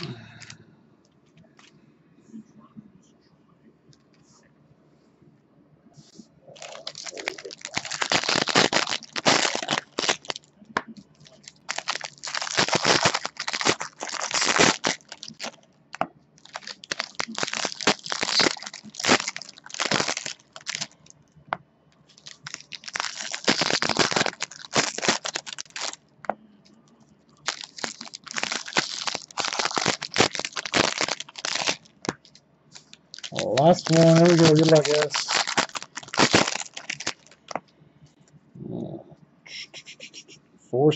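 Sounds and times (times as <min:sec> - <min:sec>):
foil wrappers tearing and crinkling: 0:06.6 - 0:10.4, 0:11.2 - 0:15.6, 0:16.4 - 0:21.0, 0:22.2 - 0:26.0, 0:27.4 - 0:37.6.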